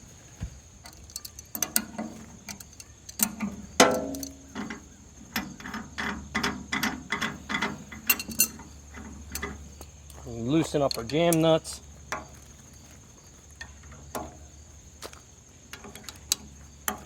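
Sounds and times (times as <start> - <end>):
loud metal clank with ring: 3.8 - 4.5.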